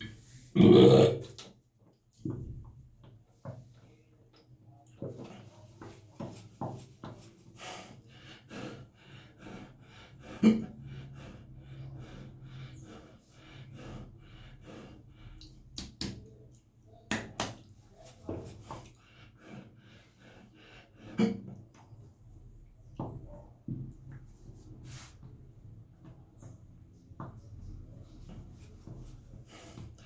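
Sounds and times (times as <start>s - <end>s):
man hiccuping: 0.6s - 1.3s
throat and breath sounds: 5.2s - 16.2s.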